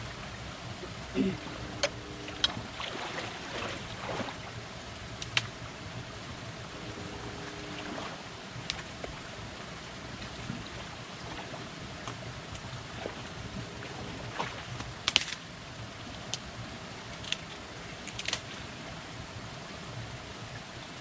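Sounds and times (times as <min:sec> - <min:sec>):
water sloshing: 0:00.0 - 0:05.7, 0:06.4 - 0:09.4, 0:10.0 - 0:15.4
grass and brush rustling: 0:01.0 - 0:04.6.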